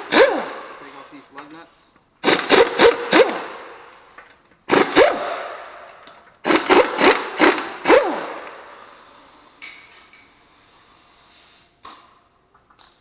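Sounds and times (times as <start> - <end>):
pneumatic impact wrench: 0.0 - 1.2, 2.2 - 12.2.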